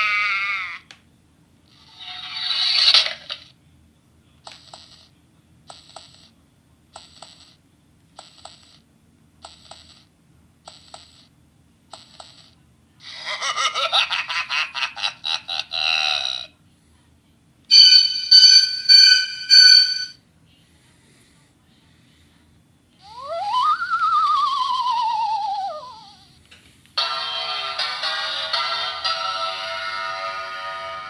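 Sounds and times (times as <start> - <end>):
sound effect gadget clicky pulses: 7.0 - 7.6, 8.2 - 8.8, 9.4 - 10.1, 10.7 - 11.3, 11.9 - 12.6.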